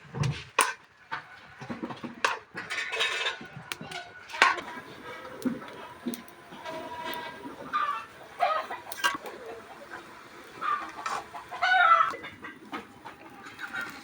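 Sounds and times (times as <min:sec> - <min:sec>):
metal utensils clinking on a pot: 0:02.2 - 0:14.0.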